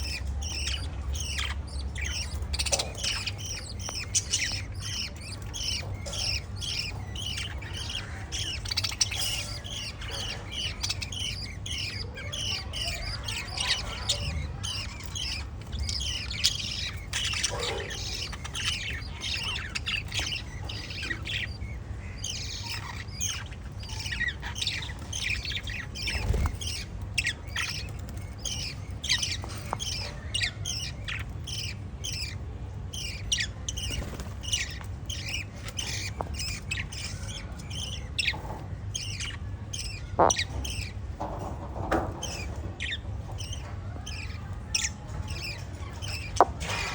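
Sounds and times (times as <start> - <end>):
lovebirds chirping: 0.0 - 46.9.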